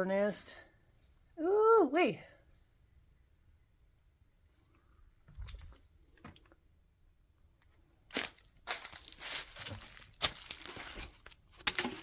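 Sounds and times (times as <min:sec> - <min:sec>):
dry debris crunching: 0:08.1 - 0:12.0.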